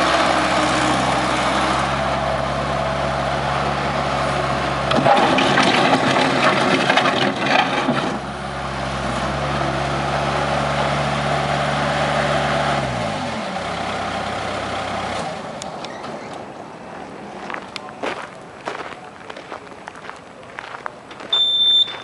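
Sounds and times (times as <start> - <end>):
skid steer engine running: 0.0 - 16.4.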